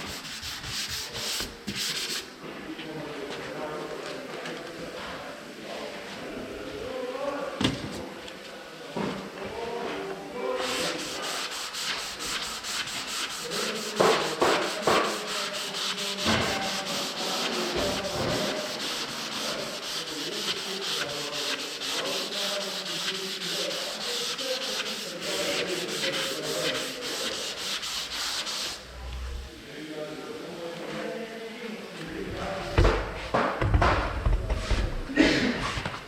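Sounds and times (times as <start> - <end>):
sandpaper rubbing on filler: 0.0 - 2.4, 10.4 - 29.5
loud knocks: 32.7 - 34.5.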